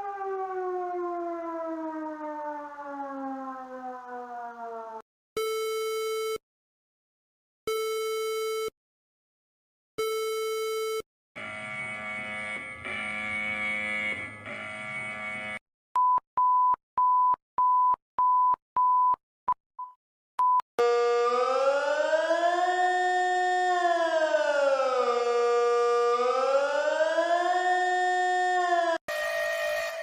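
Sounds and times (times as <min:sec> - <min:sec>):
rising siren-like tone: 0:00.0 - 0:05.0, 0:20.8 - 0:30.0
steady electronic tone: 0:11.4 - 0:15.6.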